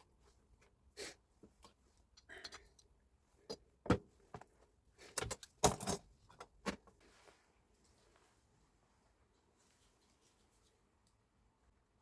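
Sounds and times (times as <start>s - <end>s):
metal tools clinking and knocking: 5.2s - 6.5s.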